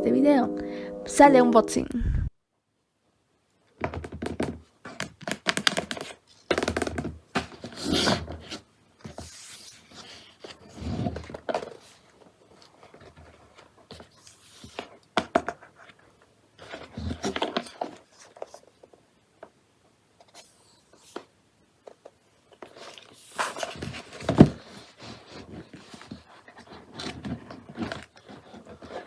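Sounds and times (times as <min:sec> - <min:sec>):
packaging rustling and scraping: 0:22.5 - 0:29.0.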